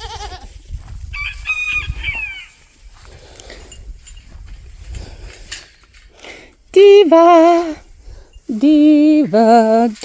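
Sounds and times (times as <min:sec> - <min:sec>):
low wind rumble: 0:00.6 - 0:06.2
high-pitched animal call: 0:01.2 - 0:02.6.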